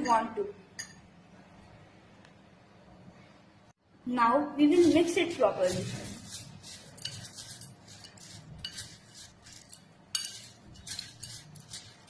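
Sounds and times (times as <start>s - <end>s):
spoon clinking against bowl: 0.8s - 1.1s, 7.0s - 12.0s
spoon stirring crunchy mix: 4.6s - 12.0s.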